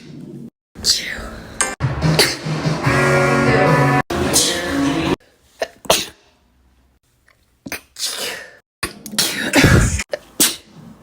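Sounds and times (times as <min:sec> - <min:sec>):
person sneezing: 0:02.2 - 0:02.5, 0:05.6 - 0:06.3, 0:09.2 - 0:10.8.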